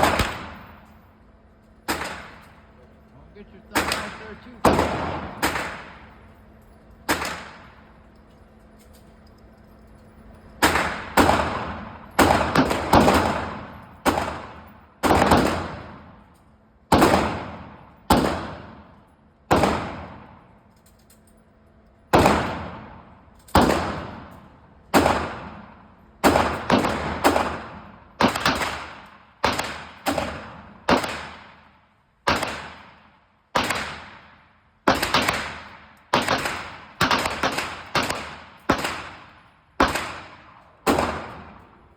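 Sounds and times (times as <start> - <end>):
gunshots with echo: 0.0 - 0.7, 1.9 - 2.6, 3.6 - 6.2, 10.6 - 16.1, 16.9 - 18.9, 19.5 - 20.4, 22.1 - 23.0, 23.6 - 24.3, 25.0 - 31.7, 32.3 - 41.7.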